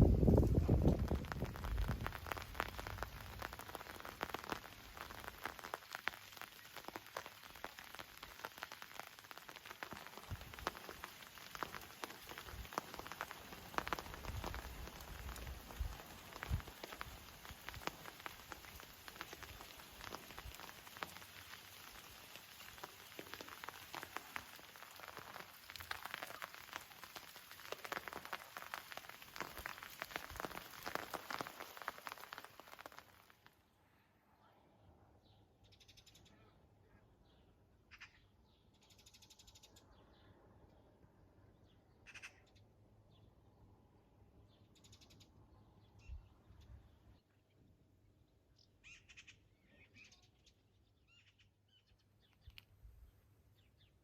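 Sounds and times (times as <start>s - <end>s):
rain drops pattering: 0.0s - 33.6s.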